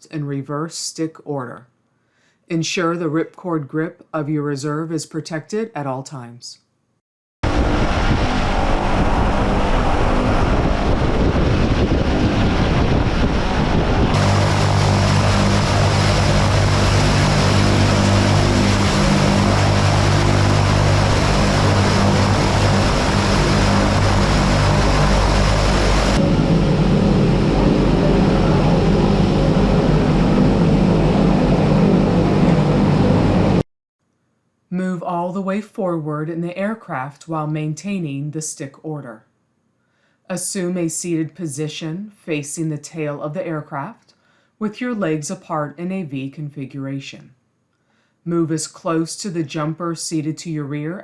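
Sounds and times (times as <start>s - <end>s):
turboprop engines droning: 7.4s - 33.6s.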